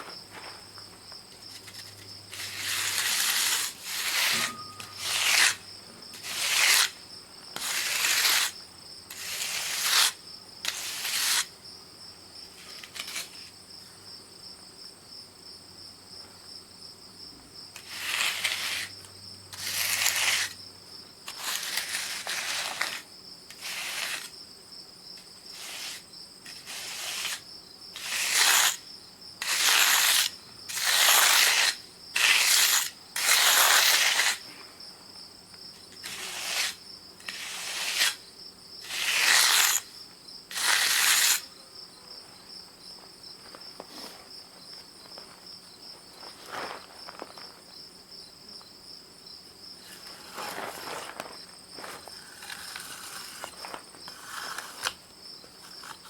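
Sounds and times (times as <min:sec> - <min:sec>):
hand tool scraping concrete: 0:00.0 - 0:11.6, 0:12.5 - 0:13.6, 0:17.8 - 0:20.6, 0:21.2 - 0:24.4, 0:25.2 - 0:28.8, 0:29.4 - 0:34.7, 0:35.8 - 0:41.6, 0:49.8 - 0:56.0
high insect trill: 0:00.0 - 0:56.0.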